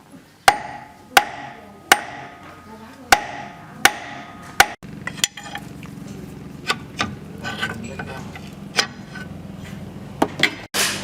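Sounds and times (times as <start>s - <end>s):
hammer striking metal: 0.5s - 5.6s.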